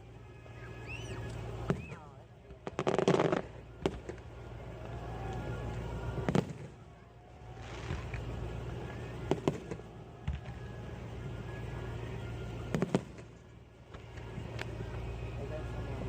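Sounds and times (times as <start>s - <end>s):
steady low rumble: 0.0s - 16.0s
fireworks bangs: 0.9s - 14.5s.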